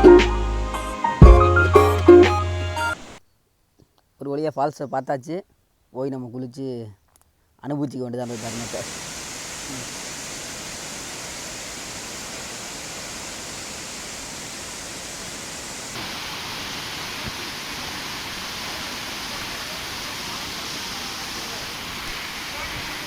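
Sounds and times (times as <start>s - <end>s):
waterfall rushing: 8.2s - 23.0s.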